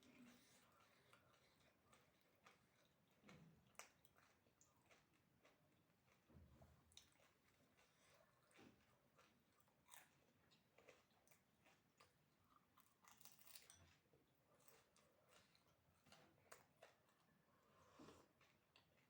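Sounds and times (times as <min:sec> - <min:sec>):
crunching and chewing: 0:00.0 - 0:19.0.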